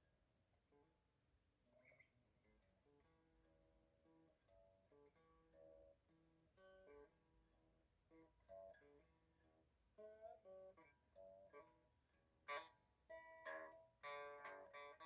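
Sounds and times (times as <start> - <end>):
unplugged electric guitar playing: 12.5 - 15.0.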